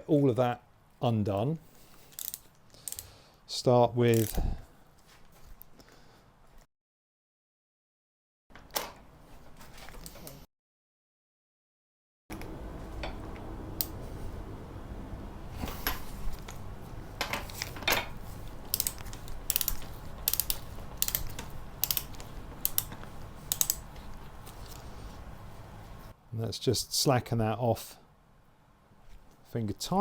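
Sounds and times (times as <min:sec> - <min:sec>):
ratchet wrench clicking: 0:02.1 - 0:03.1, 0:04.1 - 0:04.4, 0:18.4 - 0:24.8
low steady hum: 0:12.3 - 0:26.3.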